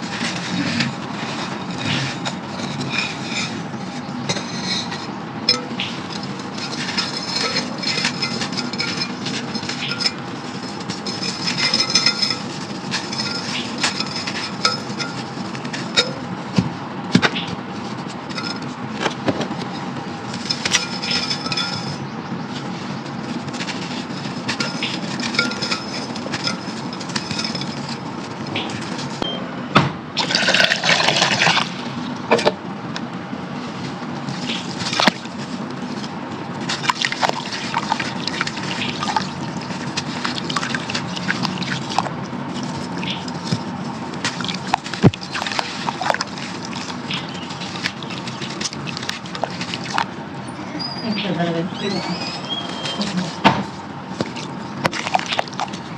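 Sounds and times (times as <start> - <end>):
clinks against clay pot: 0.2 - 29.2, 34.3 - 50.2, 54.2 - 55.9
gritty sand crunching: 33.5 - 50.4.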